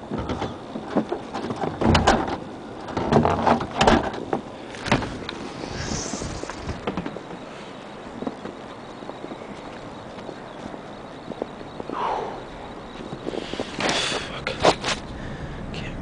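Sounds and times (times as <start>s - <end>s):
knocking and clattering: 0.1s - 5.1s
short hiss: 5.4s - 6.8s.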